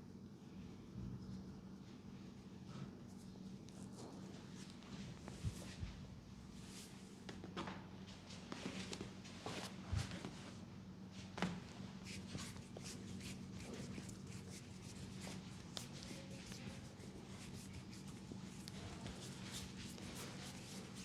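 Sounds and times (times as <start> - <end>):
hands rustling through hair: 12.0 - 21.0.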